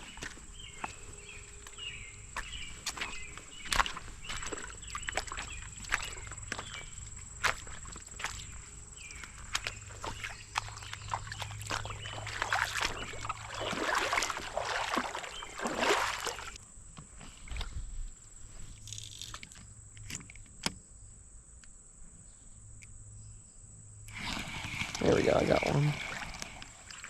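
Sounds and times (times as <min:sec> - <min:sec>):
creek water splashing: 0:00.0 - 0:16.6, 0:24.1 - 0:27.0.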